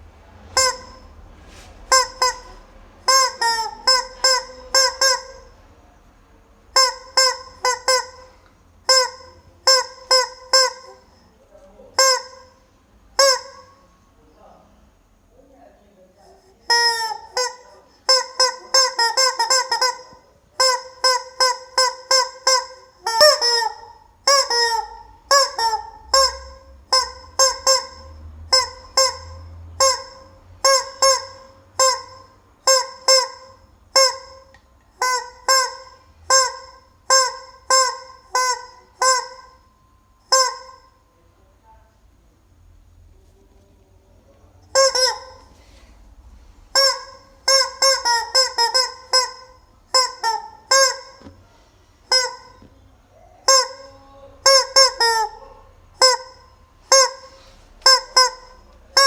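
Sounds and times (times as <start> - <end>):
rubber chicken toy squawking: 0.5 - 1.1, 1.9 - 5.5, 6.7 - 11.2, 12.0 - 12.6, 13.2 - 13.8, 16.6 - 39.6, 40.2 - 40.9, 44.7 - 45.6, 46.7 - 51.3, 52.0 - 59.0.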